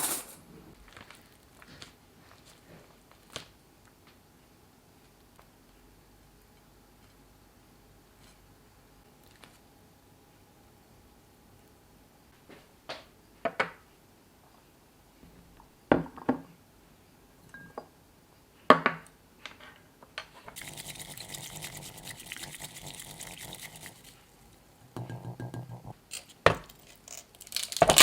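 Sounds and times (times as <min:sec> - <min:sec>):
water running: 0:00.0 - 0:00.4, 0:20.6 - 0:26.0.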